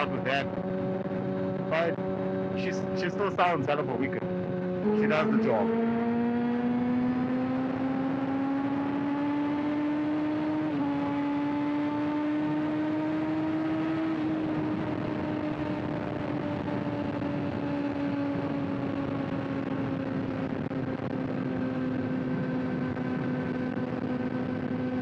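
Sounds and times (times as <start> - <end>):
motorcycle engine cruising: 0.0 - 25.0.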